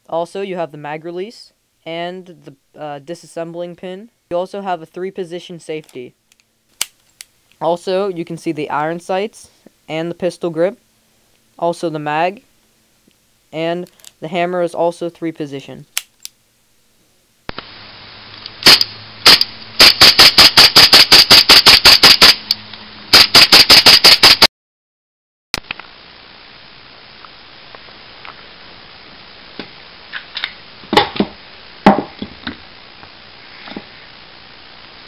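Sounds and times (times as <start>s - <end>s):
background noise: 0.0s - 24.5s, 25.6s - 35.0s
airsoft pistol firing: 18.6s - 22.4s, 23.1s - 24.5s.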